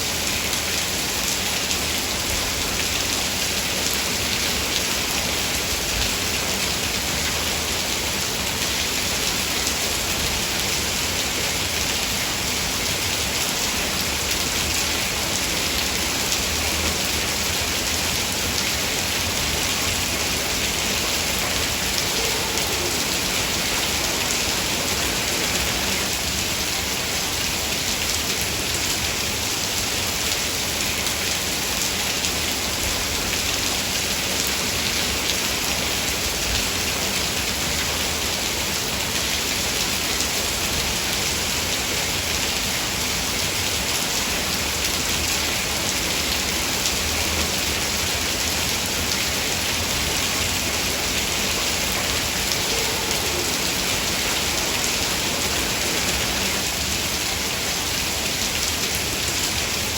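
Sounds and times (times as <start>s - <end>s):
heavy rain: 0.0s - 59.9s.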